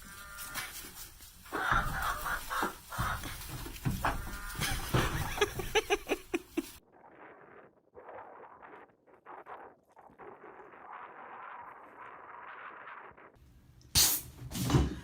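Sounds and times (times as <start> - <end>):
chickens clucking: 0.0 - 6.8.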